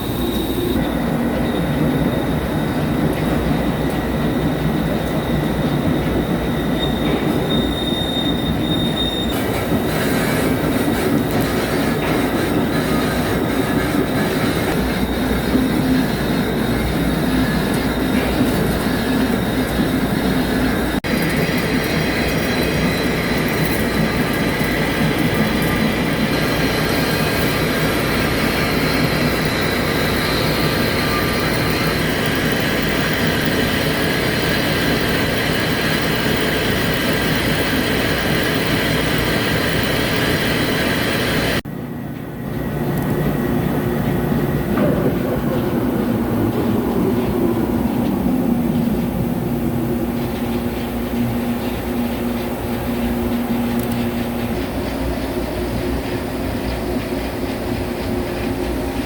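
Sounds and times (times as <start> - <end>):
machine cutting metal: 9.3 - 19.6, 21.0 - 41.6.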